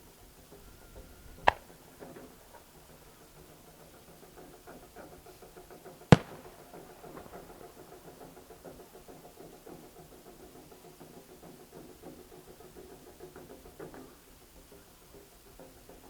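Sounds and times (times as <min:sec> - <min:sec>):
faint taiko drums beating: 0:01.5 - 0:12.6
firework shell bang with echo: 0:06.1 - 0:08.8.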